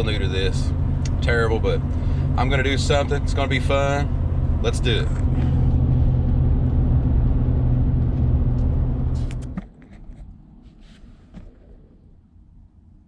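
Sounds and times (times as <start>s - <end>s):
truck engine droning: 0.0s - 9.6s
road noise: 0.0s - 13.0s.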